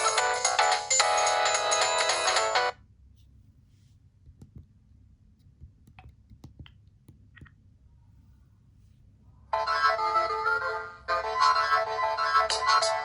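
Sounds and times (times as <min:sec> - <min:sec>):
phone ringtone: 0:00.0 - 0:02.7.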